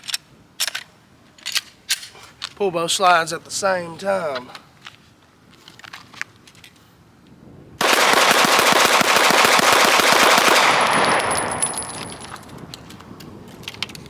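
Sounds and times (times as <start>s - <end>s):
rapid automatic gunfire: 7.8s - 12.0s.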